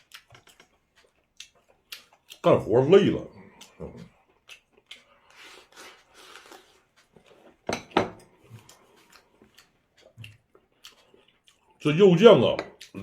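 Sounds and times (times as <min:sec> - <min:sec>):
person eating mouth sounds: 0:03.3 - 0:07.4, 0:08.2 - 0:11.8.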